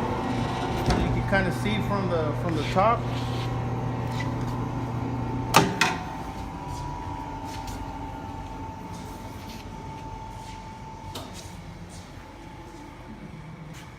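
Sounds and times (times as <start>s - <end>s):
saw motor hum: 0.0s - 10.4s
thin steady whine: 0.0s - 13.9s.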